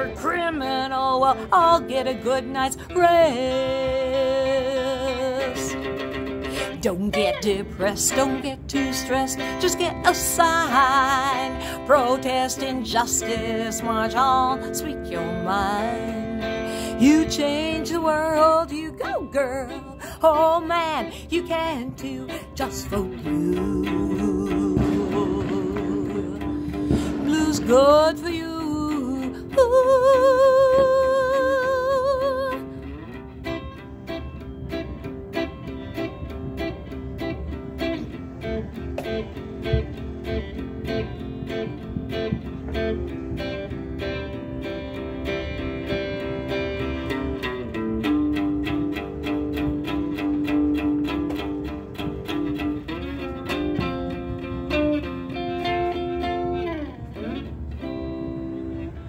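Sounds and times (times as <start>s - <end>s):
person singing with vibrato: 0.0s - 32.9s
guitar playing: 0.0s - 59.0s.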